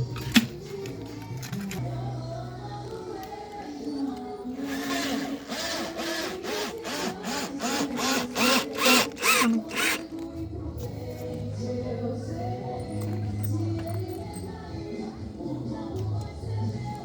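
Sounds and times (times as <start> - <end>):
electric drill bursts: 4.6 - 10.1.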